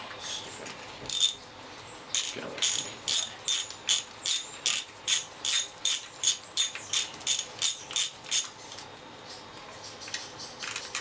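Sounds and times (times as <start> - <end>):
ratchet wrench pawl clicking: 1.1 - 1.4, 2.2 - 8.5.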